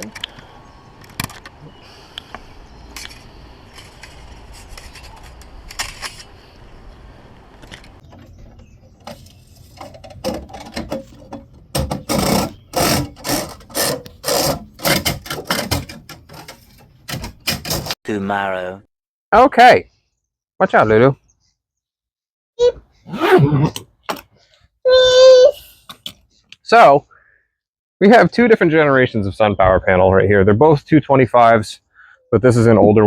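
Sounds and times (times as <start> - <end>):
fish tape scraping in conduit: 3.0 - 6.5, 11.8 - 16.8.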